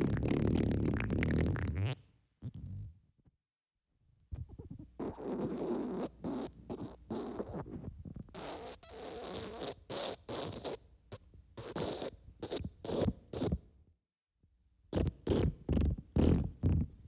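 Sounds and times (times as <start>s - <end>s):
wet fart sound effect: 0.0s - 2.9s.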